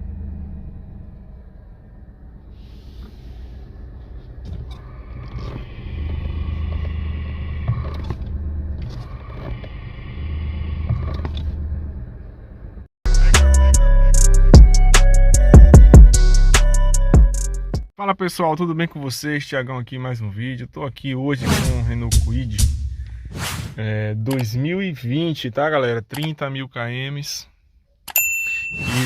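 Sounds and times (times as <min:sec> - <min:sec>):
car engine idling: 0:00.0 - 0:12.9
clutch bearing whine: 0:00.0 - 0:12.9
loud music: 0:13.1 - 0:17.8.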